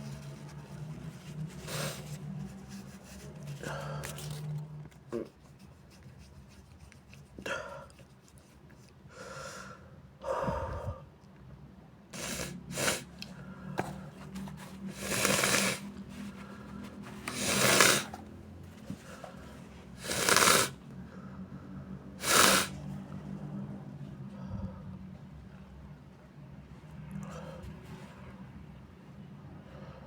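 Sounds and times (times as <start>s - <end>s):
nasal bursts from blocked nose: 1.6s - 2.1s, 12.2s - 13.1s, 14.9s - 16.6s, 17.2s - 18.2s, 20.0s - 20.8s, 22.2s - 22.8s.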